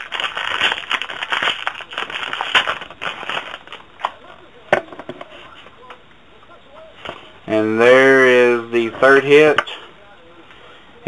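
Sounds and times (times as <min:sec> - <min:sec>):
wrapper tearing and crinkling: 0:00.0 - 0:04.2.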